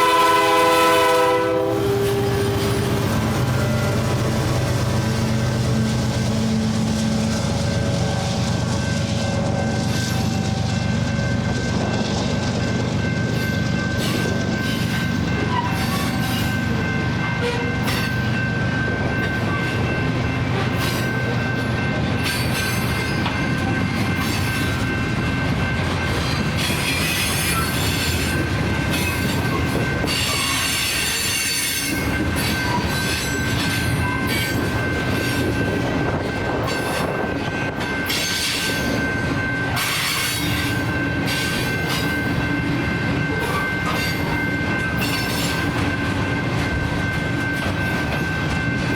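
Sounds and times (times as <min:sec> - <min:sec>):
freight train rumbling and clanking: 0:00.0 - 0:48.9
high-pitched wheel squeal: 0:26.6 - 0:28.3.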